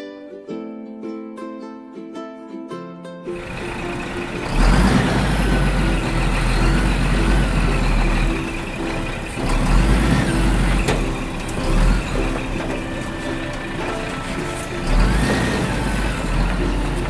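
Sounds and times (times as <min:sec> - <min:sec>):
truck engine rumbling: 0:03.3 - 0:17.0
background music: 0:03.4 - 0:17.0.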